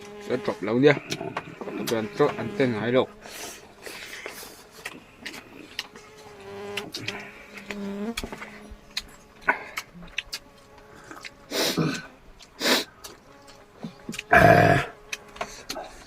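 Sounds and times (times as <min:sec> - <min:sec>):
slurping: 0:03.2 - 0:15.8
sneeze or sharp exhalation: 0:11.5 - 0:12.9.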